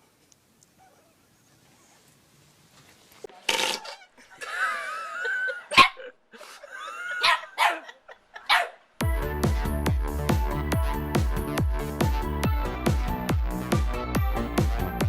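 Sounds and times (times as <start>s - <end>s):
dog barking: 0.8s - 1.2s, 7.2s - 8.8s.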